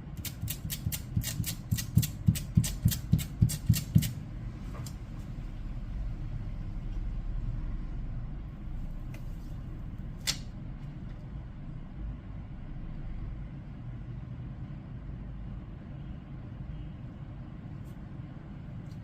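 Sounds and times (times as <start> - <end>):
low background rumble: 4.1 - 19.0.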